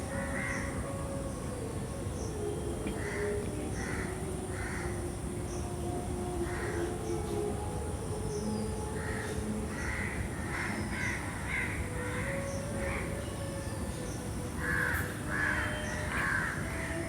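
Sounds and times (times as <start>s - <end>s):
crows cawing: 14.6s - 17.0s.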